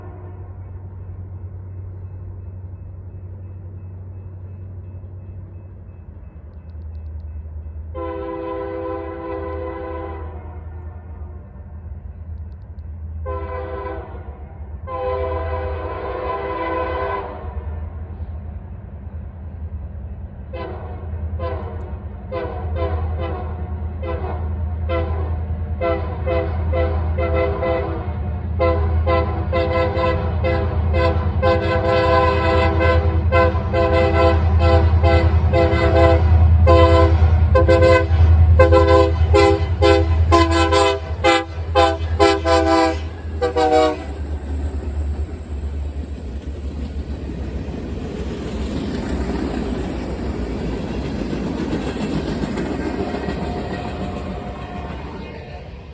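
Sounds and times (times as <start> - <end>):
locomotive engine rumble: 0.0 - 55.9
locomotive air horn toots: 7.9 - 11.4, 13.2 - 17.7, 20.5 - 44.3.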